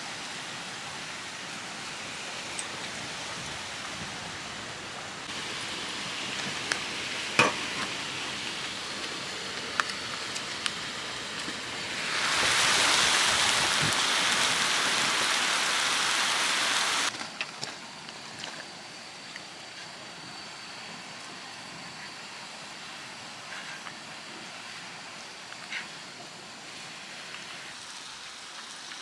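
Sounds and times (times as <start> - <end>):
loud steady hiss: 0.0 - 17.1, 18.8 - 29.0
mountain stream rushing: 0.0 - 17.1.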